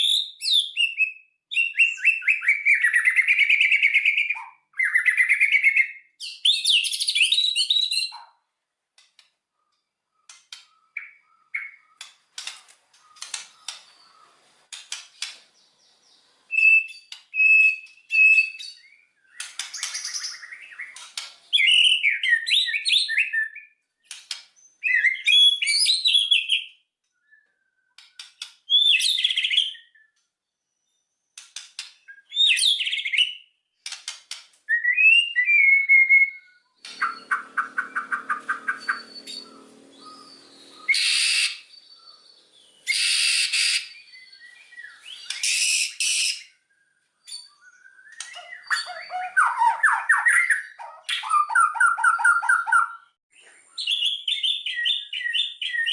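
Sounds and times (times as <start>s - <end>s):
bird singing whistled phrases: 0.0s - 8.2s, 16.5s - 23.8s, 24.8s - 28.0s, 28.7s - 30.2s, 32.1s - 33.4s, 34.7s - 46.6s, 47.2s - 55.9s
harsh scratchy bird calls: 9.1s - 26.6s, 31.2s - 46.6s, 47.3s - 53.0s
bird rattling call: 36.9s - 41.7s.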